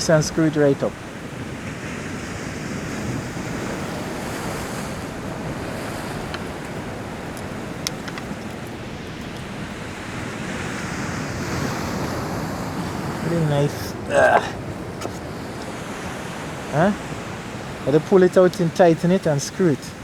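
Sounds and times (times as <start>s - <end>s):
ocean surf against rocks: 0.0s - 20.0s
wind buffeting microphone: 0.0s - 20.0s
light sharp clicks: 6.2s - 9.5s.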